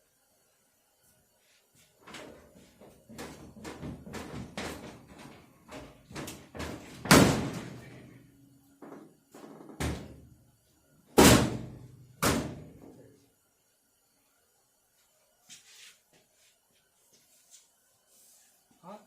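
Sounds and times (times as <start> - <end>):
knocks and clunks: 2.1 - 8.0
steel truck door slamming: 6.6 - 7.8.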